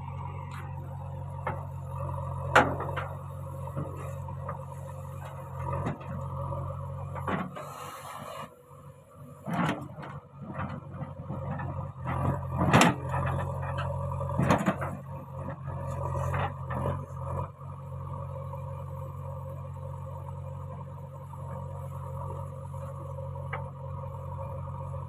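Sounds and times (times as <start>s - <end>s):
diesel engine running: 0.0s - 25.0s.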